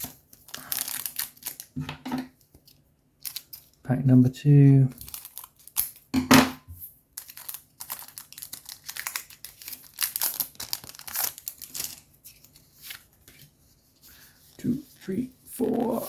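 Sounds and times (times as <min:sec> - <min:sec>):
foil wrapper tearing and crinkling: 0:00.0 - 0:01.8, 0:03.2 - 0:03.8, 0:04.9 - 0:06.1, 0:07.2 - 0:13.5.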